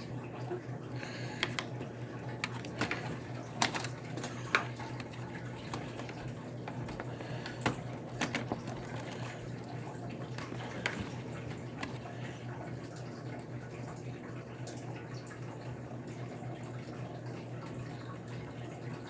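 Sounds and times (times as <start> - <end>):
small clicks and taps of parts: 1.4 - 1.8, 2.4 - 9.4.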